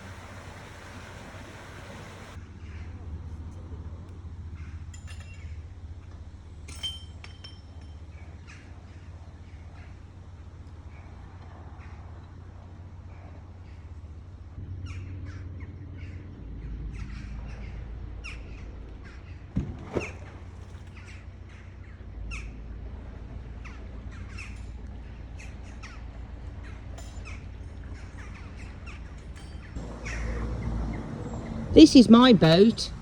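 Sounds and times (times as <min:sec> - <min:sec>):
birds calling: 0:00.0 - 0:02.8, 0:13.0 - 0:33.0.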